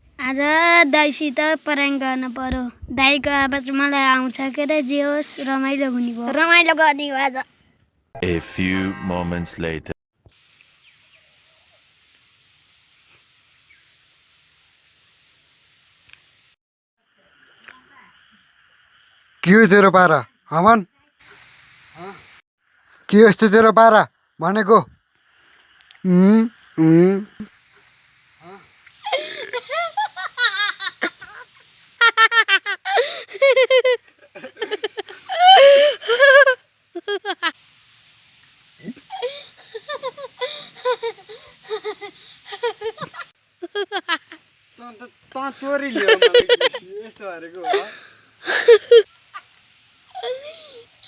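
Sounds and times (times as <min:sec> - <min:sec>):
high-pitched insect drone: 0:00.2 - 0:02.5, 0:26.0 - 0:51.0
high-pitched laughter: 0:28.9 - 0:37.5, 0:38.8 - 0:44.4, 0:45.8 - 0:46.8, 0:47.6 - 0:49.5, 0:50.1 - 0:51.0.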